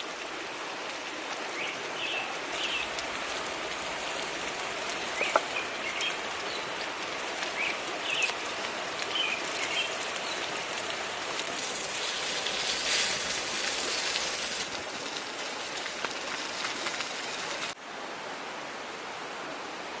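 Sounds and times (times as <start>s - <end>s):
meat sizzling over fire: 0.0s - 17.8s.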